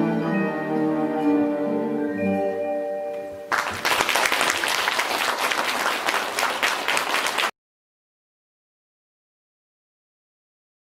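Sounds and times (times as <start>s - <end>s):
audience applause: 3.5s - 7.5s.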